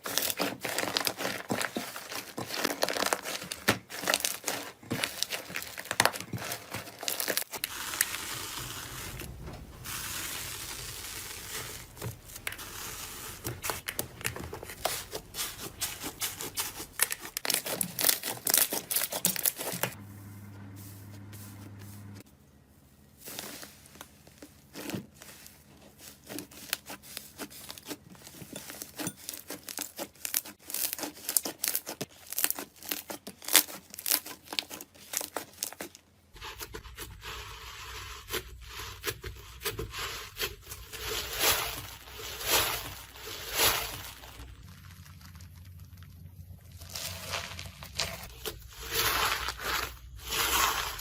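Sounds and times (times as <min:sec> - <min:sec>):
slime squelching: 0:00.0 - 0:20.0, 0:28.8 - 0:51.0
low hum: 0:20.0 - 0:22.5
slime crackling and popping: 0:40.4 - 0:51.0.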